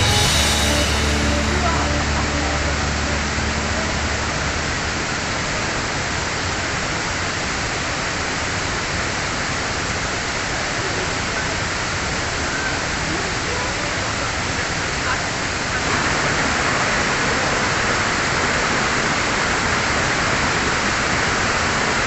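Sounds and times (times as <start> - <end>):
waterfall roaring: 0.0 - 22.0.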